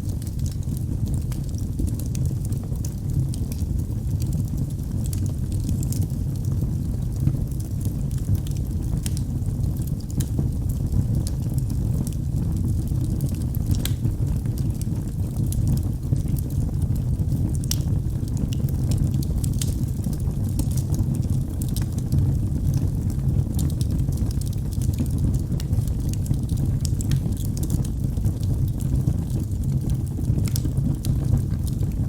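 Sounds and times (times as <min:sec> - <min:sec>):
wood fire crackling and popping: 0:00.0 - 0:32.0.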